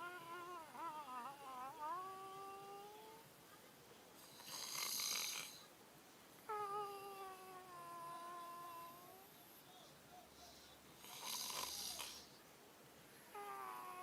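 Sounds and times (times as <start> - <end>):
whistling snoring: 4.3 - 5.6, 11.0 - 12.3.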